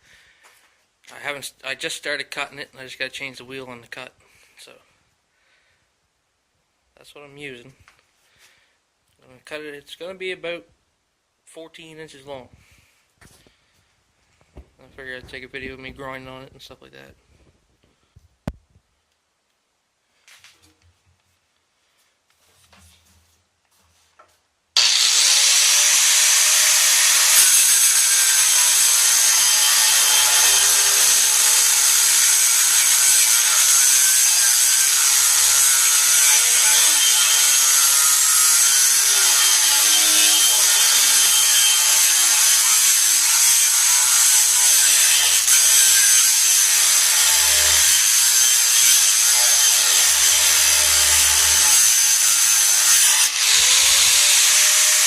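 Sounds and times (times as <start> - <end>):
angle grinder cutting steel: 24.8 - 55.0.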